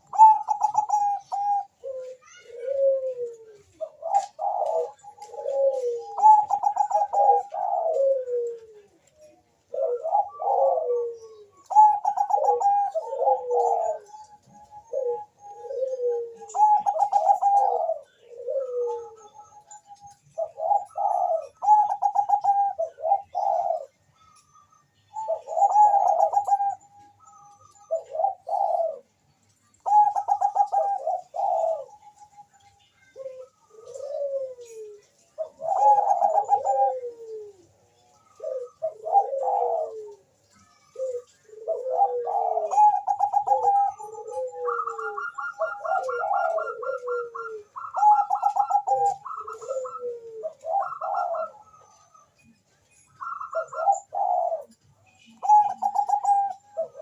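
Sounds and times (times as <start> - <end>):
dove cooing: 0.0 - 57.0.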